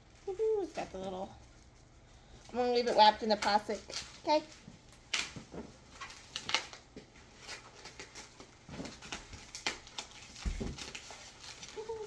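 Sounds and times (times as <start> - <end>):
packaging rustling and clicking: 3.4 - 12.0.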